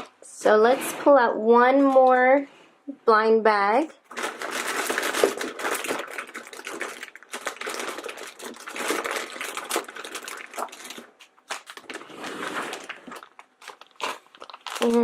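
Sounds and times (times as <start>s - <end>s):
plastic packets crinkling: 4.0s - 15.0s.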